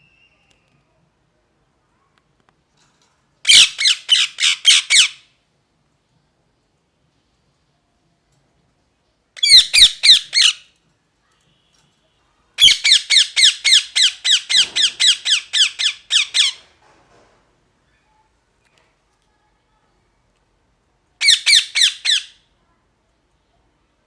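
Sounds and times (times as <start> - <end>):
parakeet screeching: 3.5 - 5.2, 9.4 - 10.6, 12.6 - 16.6, 21.2 - 22.4.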